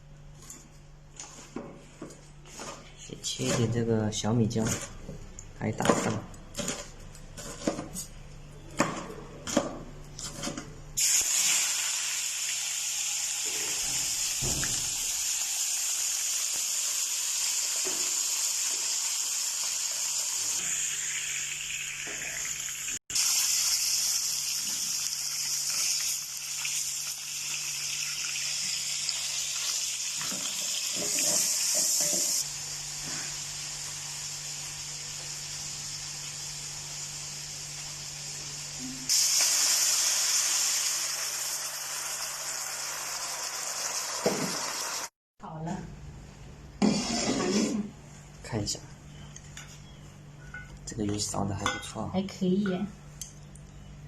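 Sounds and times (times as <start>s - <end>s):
food sizzling in hot oil: 11.0s - 45.1s.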